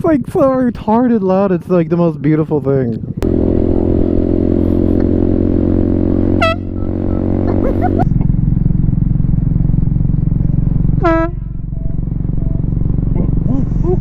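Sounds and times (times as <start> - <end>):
motorcycle engine running: 3.0 - 14.0
air horn blast: 4.4 - 7.6, 11.0 - 11.9.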